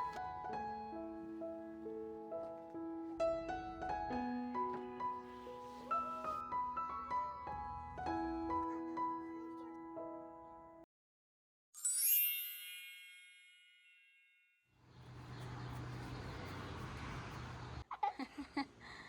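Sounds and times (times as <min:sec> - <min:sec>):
bright shimmering chime: 0:11.8 - 0:14.5.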